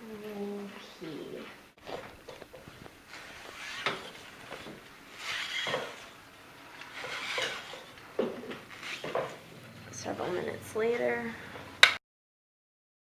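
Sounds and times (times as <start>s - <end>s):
cloth rustling: 1.8s - 9.5s.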